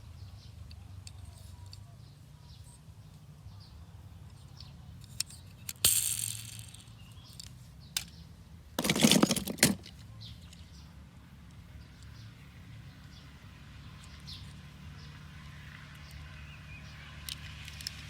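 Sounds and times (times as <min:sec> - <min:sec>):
small hard objects clattering: 0:05.3 - 0:08.1, 0:08.8 - 0:10.0.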